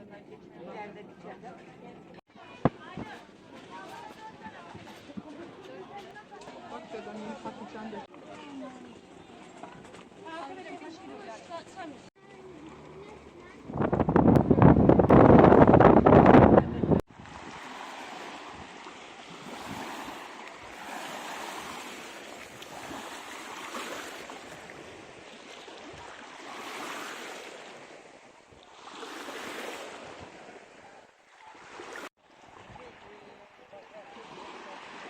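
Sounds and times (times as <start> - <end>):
small waves washing onto shore: 16.8 - 35.0.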